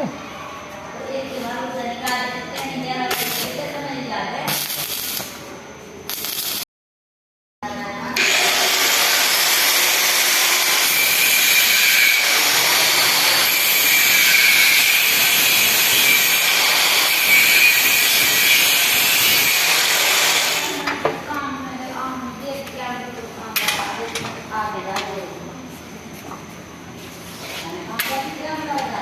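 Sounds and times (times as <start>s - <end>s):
power tool grinding metal: 8.2s - 20.9s.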